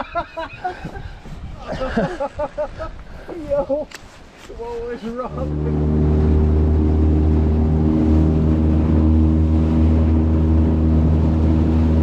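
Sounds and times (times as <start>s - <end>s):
small boat motor humming: 5.1s - 12.0s.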